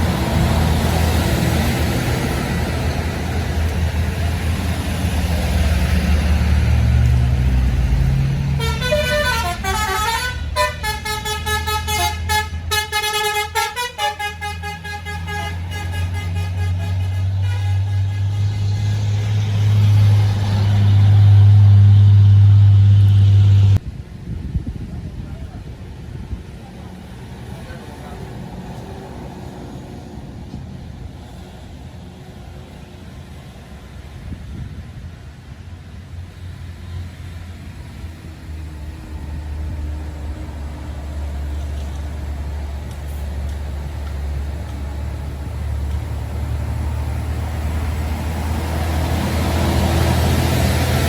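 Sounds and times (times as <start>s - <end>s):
rushing noise: 0.0s - 26.6s
bus engine droning: 0.0s - 51.0s.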